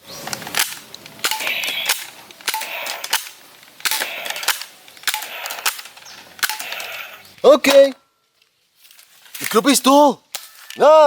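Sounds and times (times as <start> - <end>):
toy gun cracks with hissing tail: 0.2 - 7.9.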